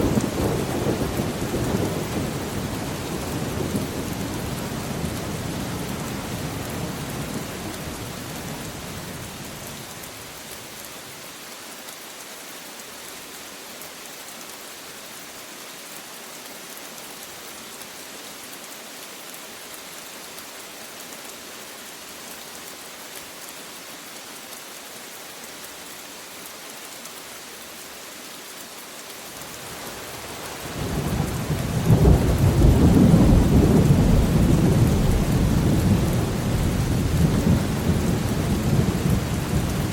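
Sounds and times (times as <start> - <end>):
steady rain: 0.0 - 39.9
thunder rumble: 30.9 - 39.9.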